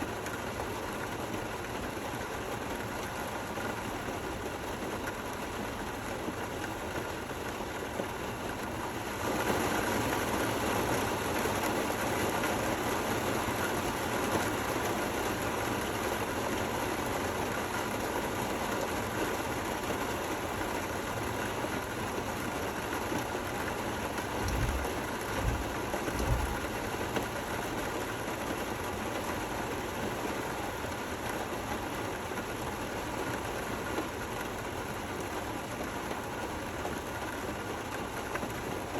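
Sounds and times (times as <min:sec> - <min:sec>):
rain falling: 0:00.0 - 0:38.9
low thumps: 0:24.4 - 0:26.7.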